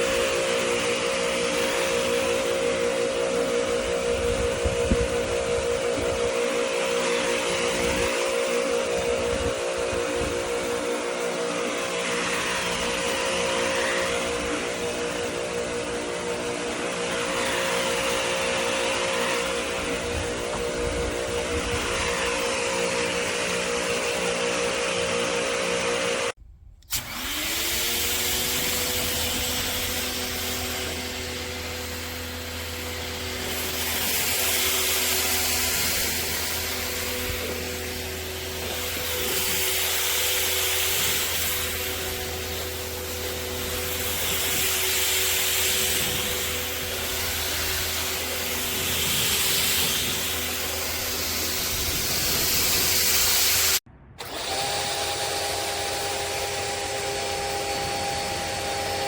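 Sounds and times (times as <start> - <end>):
pressure washer motor hum: 0.0 - 59.0
water spray hiss: 38.0 - 53.8.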